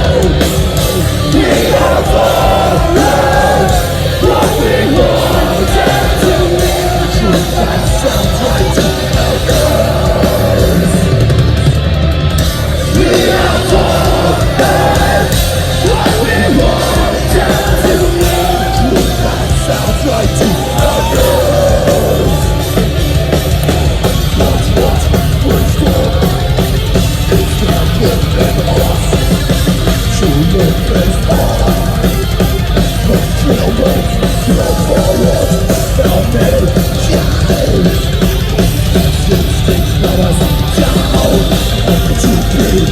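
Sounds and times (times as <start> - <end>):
distorted metal band playing: 0.0 - 42.9
drums: 0.0 - 42.9
yelled vocals: 0.0 - 42.9.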